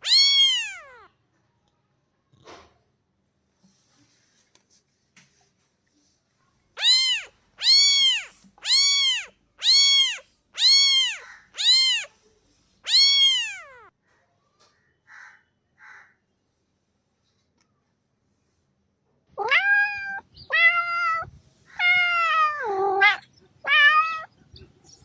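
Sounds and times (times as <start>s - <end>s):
cat meowing: 0.0s - 1.1s, 6.8s - 12.2s, 12.8s - 13.9s, 19.4s - 24.4s.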